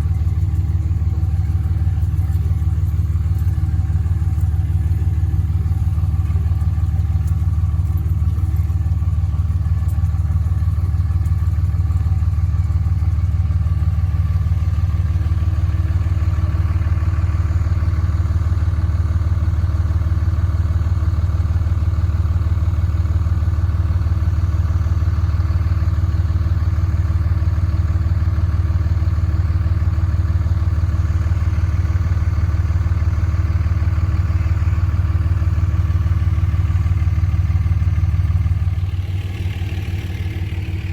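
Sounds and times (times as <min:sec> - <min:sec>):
engine running steadily: 0:00.0 - 0:40.9.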